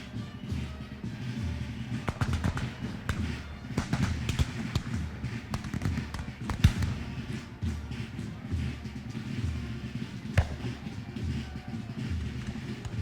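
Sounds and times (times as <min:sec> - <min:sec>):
gunshots cracking: 0:02.1 - 0:07.3.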